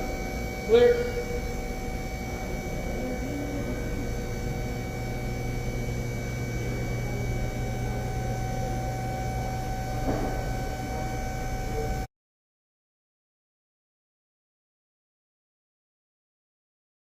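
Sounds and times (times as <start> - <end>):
background hum and hiss: 0.0 - 12.1
constant tones: 0.0 - 12.1.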